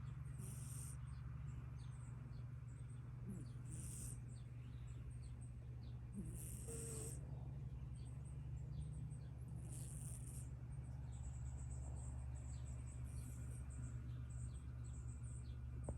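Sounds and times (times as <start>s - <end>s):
cat snoring softly: 0.4s - 1.0s, 3.3s - 4.3s, 6.2s - 7.2s, 9.5s - 10.5s.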